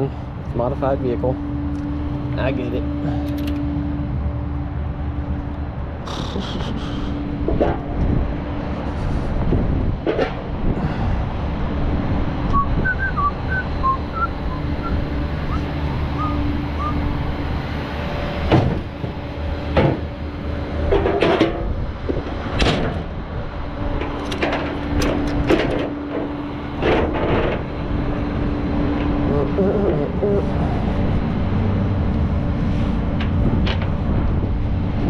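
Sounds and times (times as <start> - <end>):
truck engine rumbling: 0.0 - 35.0
sharp knocks and rattles: 24.0 - 27.7.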